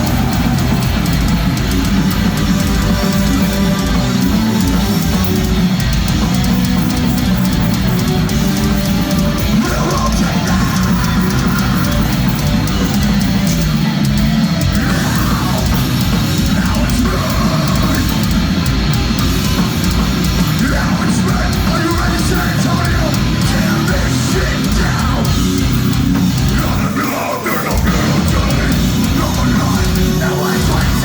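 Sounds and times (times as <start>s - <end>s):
metalcore band playing live: 0.0s - 31.0s.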